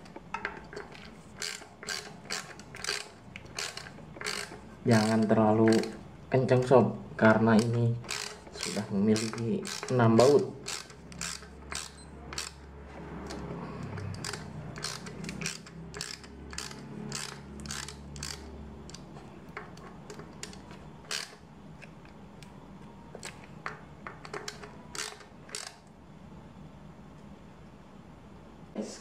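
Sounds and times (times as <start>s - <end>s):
ratchet wrench clicking: 1.0s - 6.0s, 7.5s - 19.1s, 20.1s - 21.9s, 24.2s - 25.8s.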